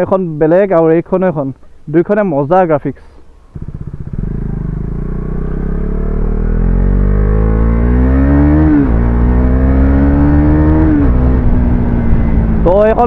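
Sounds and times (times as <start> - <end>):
motorcycle engine accelerating: 3.3 - 13.0.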